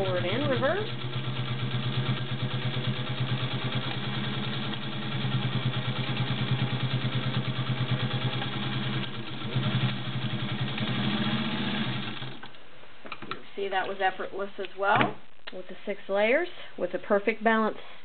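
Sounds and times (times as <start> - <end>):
sewing machine stitching: 7.7 - 12.5.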